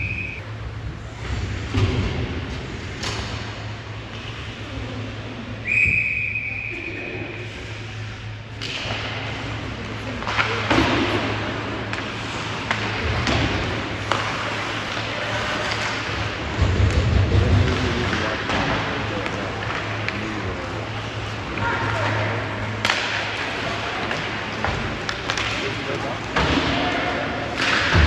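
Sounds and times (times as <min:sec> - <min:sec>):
referee's whistle: 0:00.0 - 0:00.4, 0:05.6 - 0:07.0
steady low hum: 0:00.0 - 0:28.0.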